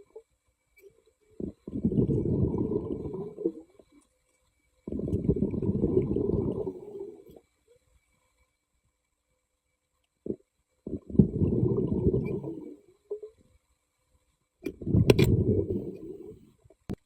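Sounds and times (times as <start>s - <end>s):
underwater breath bubbling: 1.3s - 4.0s, 4.8s - 7.4s, 10.2s - 13.3s, 14.6s - 16.7s.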